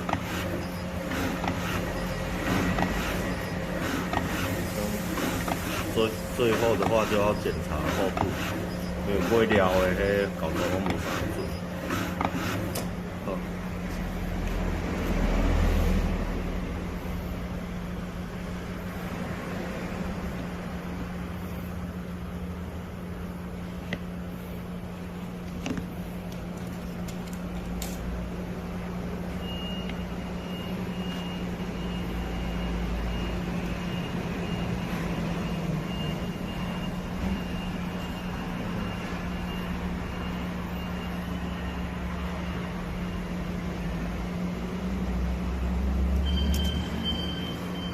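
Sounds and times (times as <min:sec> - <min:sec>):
motor hum: 0:00.0 - 0:15.1.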